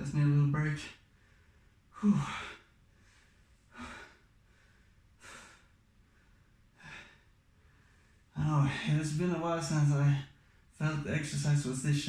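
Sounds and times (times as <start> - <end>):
man breathing hard: 1.2 - 8.3.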